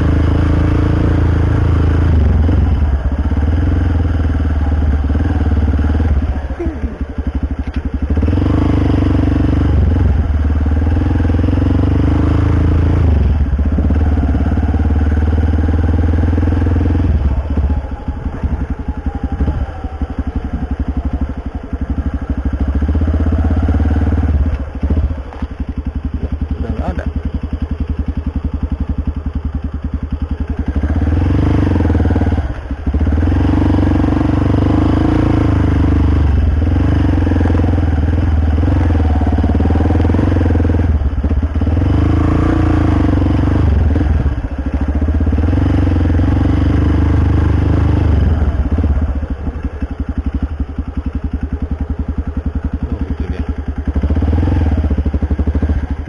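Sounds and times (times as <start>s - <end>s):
small motorcycle engine revving: 0.0s - 56.0s.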